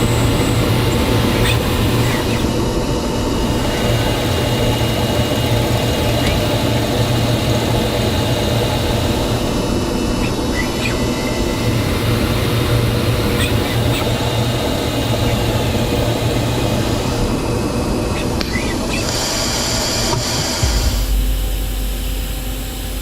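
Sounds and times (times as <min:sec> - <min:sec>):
lathe humming: 0:00.0 - 0:23.0.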